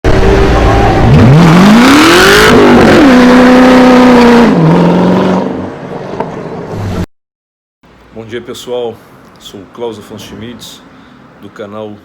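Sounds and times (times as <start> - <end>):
car engine accelerating: 0.1 - 7.1.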